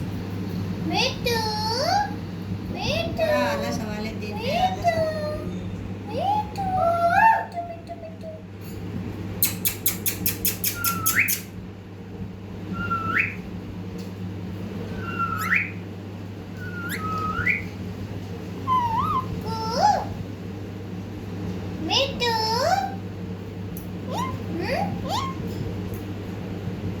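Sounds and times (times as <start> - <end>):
parrot clicking: 9.4 - 11.5
parrot whistling: 9.4 - 11.6, 12.7 - 13.5, 14.9 - 15.8, 16.6 - 17.8, 18.7 - 20.1.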